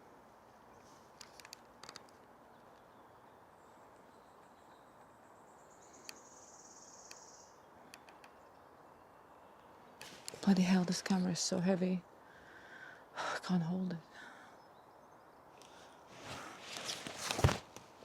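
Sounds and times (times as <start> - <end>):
soft clicks: 7.9 - 8.6.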